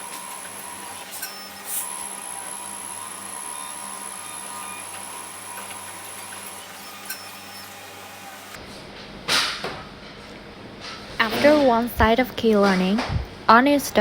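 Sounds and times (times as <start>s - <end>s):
key cutting machine whine: 0.0s - 8.6s.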